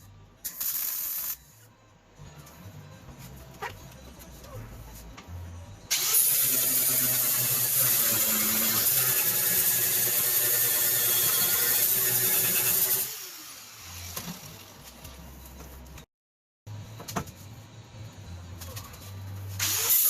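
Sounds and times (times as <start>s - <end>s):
grinder cutting sheet metal: 5.9s - 14.2s, 19.6s - 20.0s.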